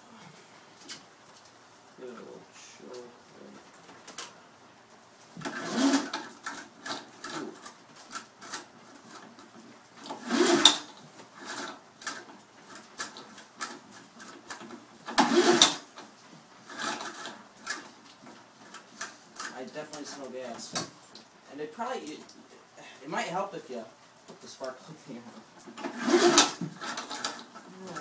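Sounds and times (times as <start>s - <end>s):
recoil starter rope pulls: 5.4s - 20.8s, 25.1s - 28.0s.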